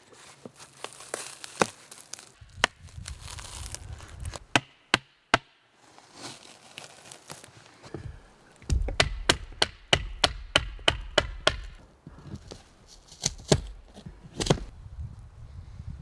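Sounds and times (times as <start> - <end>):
tool chopping into wood: 4.4 - 5.6, 8.6 - 11.8, 12.5 - 14.7.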